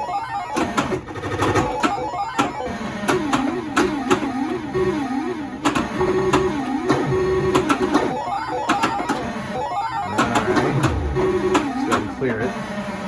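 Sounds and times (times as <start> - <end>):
pinball flippers clicking: 0.3 - 4.9, 5.6 - 12.3
ball striking targets: 0.6 - 4.8, 5.6 - 9.4, 10.0 - 12.2
warbling electronic tune: 8.1 - 11.8.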